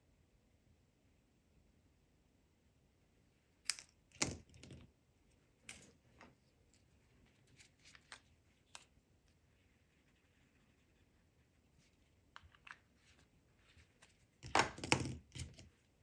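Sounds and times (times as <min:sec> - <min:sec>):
light clicks and taps of tools: 0:07.5 - 0:08.9.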